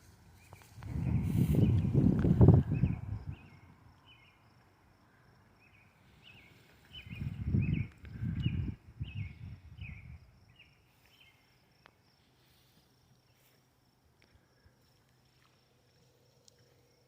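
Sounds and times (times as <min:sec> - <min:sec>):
loud low rumble: 0:00.8 - 0:03.6
small bird chirping: 0:05.6 - 0:11.6.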